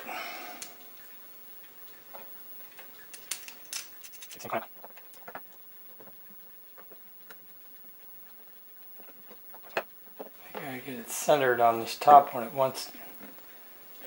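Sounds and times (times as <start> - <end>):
small metal parts clicking: 3.1 - 5.4.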